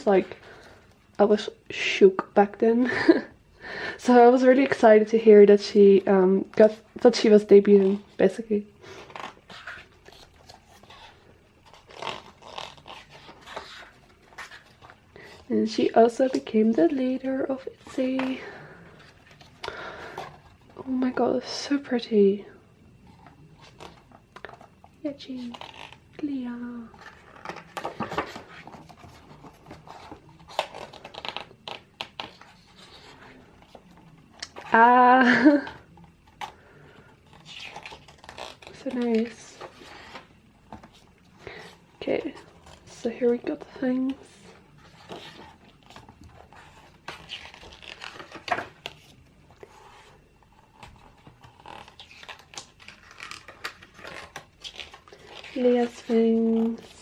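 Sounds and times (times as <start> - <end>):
paper pages rustling: 6.5 - 21.2, 26.7 - 57.0.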